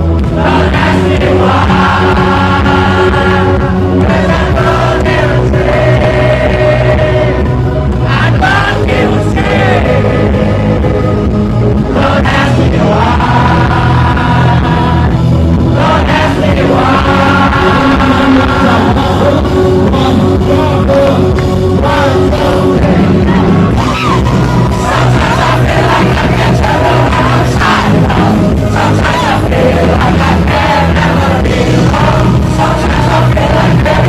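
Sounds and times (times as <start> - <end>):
rock band playing live: 0.0 - 34.0
person singing or shouting: 22.6 - 25.4.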